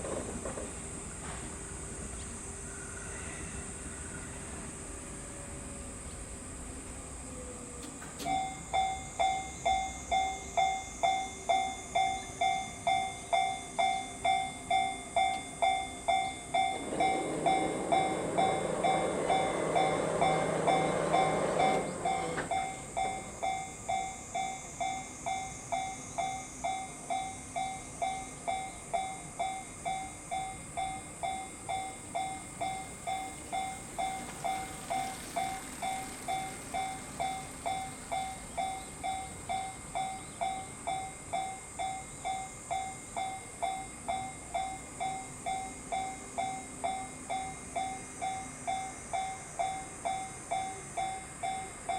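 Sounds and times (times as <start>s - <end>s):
train rumbling over crossing: 0.0s - 51.9s
level crossing alarm bell ringing: 8.2s - 51.9s.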